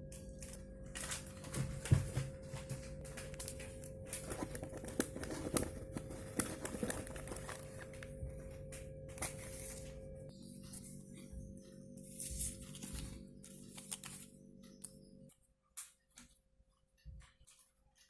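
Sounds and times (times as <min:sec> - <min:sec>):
packaging crinkling and tearing: 0:00.3 - 0:02.1, 0:02.8 - 0:10.0, 0:12.1 - 0:14.3.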